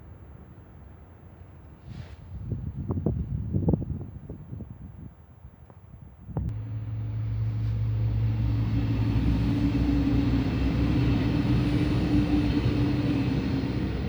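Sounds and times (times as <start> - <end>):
low hum: 6.5 - 14.0
train passing rumble: 6.5 - 14.0.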